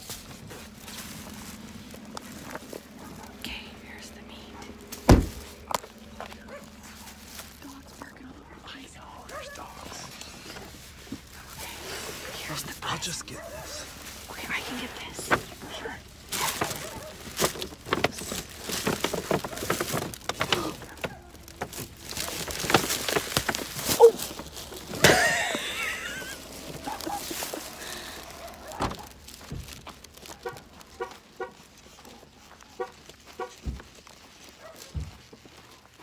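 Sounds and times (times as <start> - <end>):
hurried footsteps: 0.0 - 36.0
rustling handling: 0.0 - 36.0
distant dog barking: 2.9 - 3.4, 6.2 - 7.3, 16.3 - 17.5, 26.5 - 29.2
knocks and thumps: 5.0 - 5.6.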